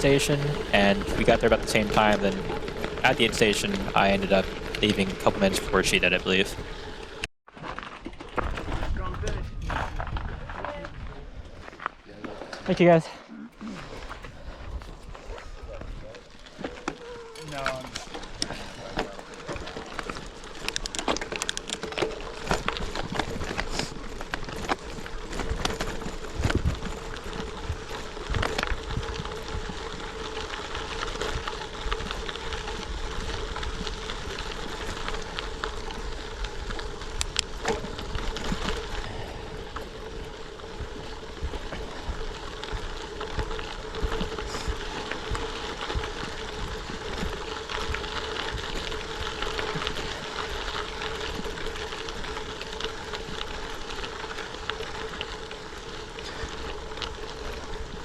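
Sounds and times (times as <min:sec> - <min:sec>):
bike tyres rolling on gravel: 0:00.0 - 0:58.0
bike knocks and rattles: 0:16.4 - 0:56.9.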